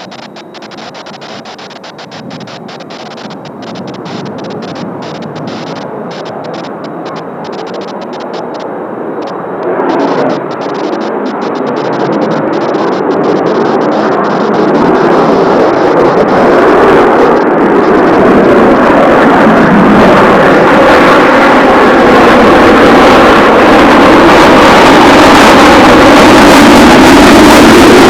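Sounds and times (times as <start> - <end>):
jet aircraft roar: 0.0 - 28.0.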